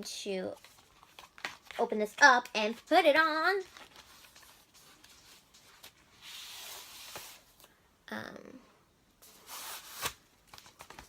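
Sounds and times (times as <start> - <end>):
packaging rustling and rubbing: 0.5 - 2.9, 3.6 - 7.6, 9.2 - 11.0.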